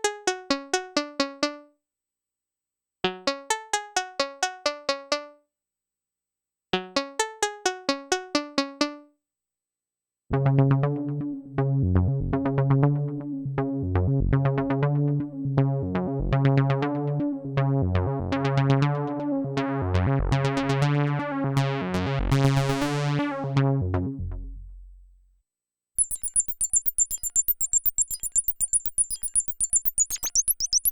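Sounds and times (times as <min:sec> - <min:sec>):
plucky synthesizer notes: 0:26.0 - 0:30.9.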